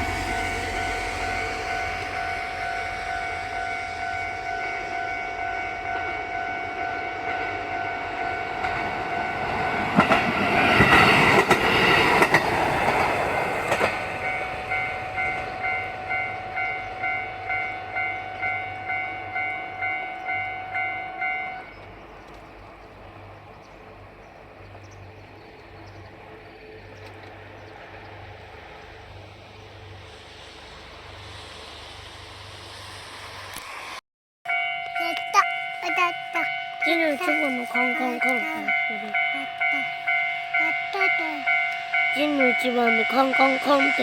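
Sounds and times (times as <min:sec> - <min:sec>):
level crossing alarm bell: 0:00.0 - 0:11.2, 0:14.2 - 0:21.7, 0:34.5 - 0:44.0
train wheels clattering: 0:08.6 - 0:18.1.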